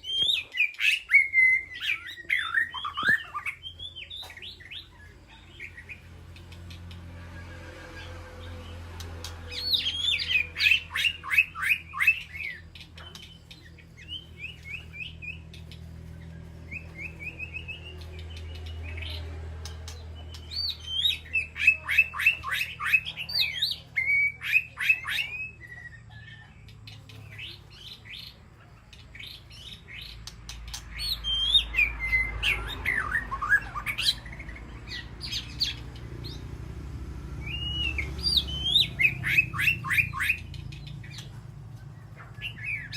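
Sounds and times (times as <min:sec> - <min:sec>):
bird whistled phrases: 0:00.0 - 0:06.0, 0:09.5 - 0:15.8, 0:16.7 - 0:19.1, 0:20.3 - 0:26.6, 0:30.7 - 0:36.4, 0:37.3 - 0:41.3
bird song with descending notes: 0:00.0 - 0:42.9.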